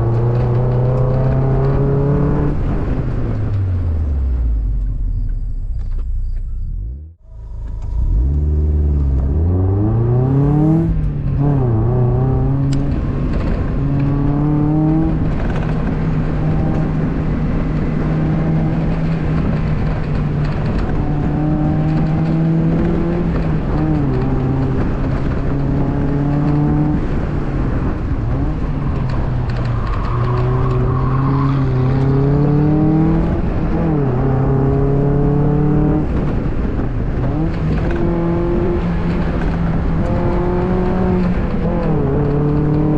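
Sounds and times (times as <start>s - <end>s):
car engine revving hard: 7.1s - 42.9s.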